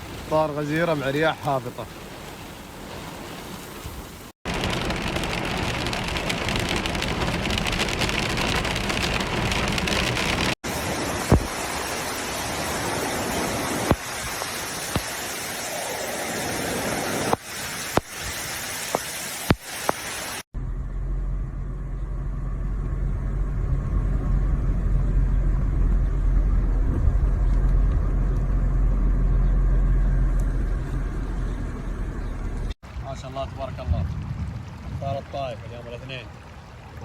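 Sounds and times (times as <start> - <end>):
heavy rain hissing: 0.0 - 20.5.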